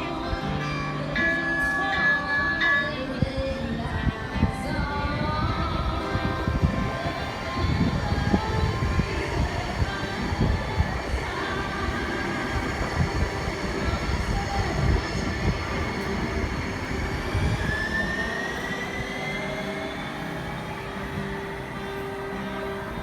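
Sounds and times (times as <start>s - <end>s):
train motors whining: 0.0s - 23.0s
train wheels rumbling on rail: 4.8s - 23.0s.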